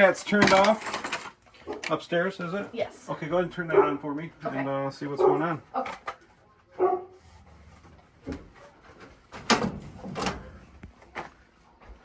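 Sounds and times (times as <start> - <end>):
knocks and clatters of handling: 0.2 - 2.0, 5.8 - 6.4, 7.2 - 12.0.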